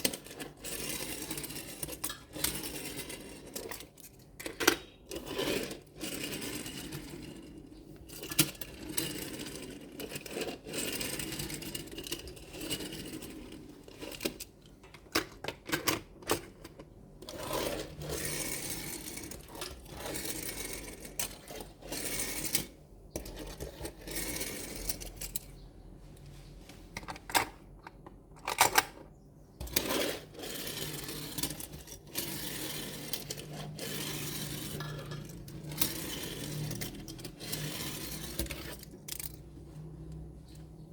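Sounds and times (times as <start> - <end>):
clicks and rattles of small parts: 13.9 - 25.6, 27.0 - 39.5
toy trucks being handled: 26.7 - 39.5.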